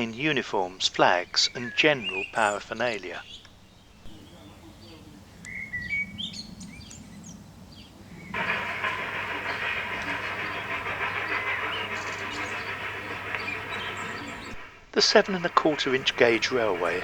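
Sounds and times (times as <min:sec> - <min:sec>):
birds chirping faintly: 0:00.0 - 0:17.0
miniature train hissing: 0:08.3 - 0:17.0.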